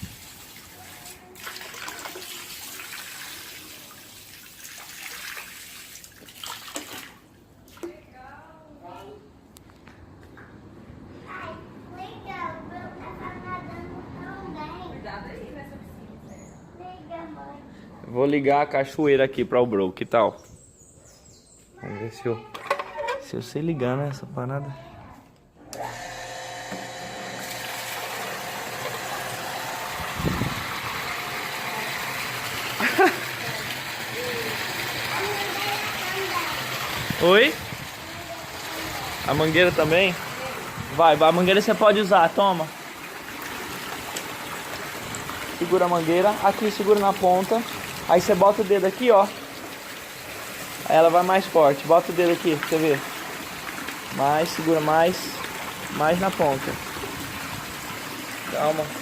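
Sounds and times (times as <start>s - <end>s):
water pouring into a pool: 0.0s - 7.3s, 25.8s - 59.0s
small water splashes: 0.0s - 7.9s, 27.2s - 59.0s
pump motor hum: 25.6s - 59.0s.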